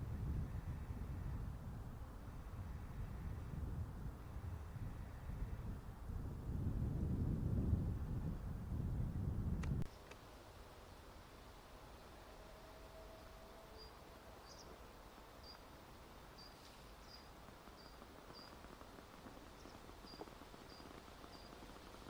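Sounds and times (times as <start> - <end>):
quiet outdoor hiss: 0.0 - 22.0
faint high bird chirps: 13.0 - 14.8, 15.4 - 15.7, 16.4 - 18.6, 19.6 - 21.6.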